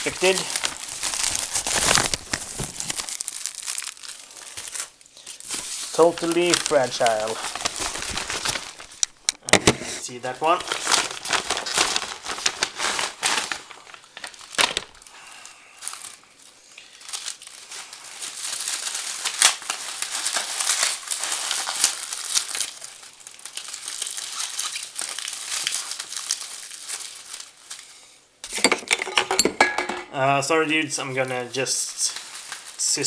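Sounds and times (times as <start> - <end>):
paper crumpling and crinkling: 0.0 - 28.2, 31.0 - 33.0.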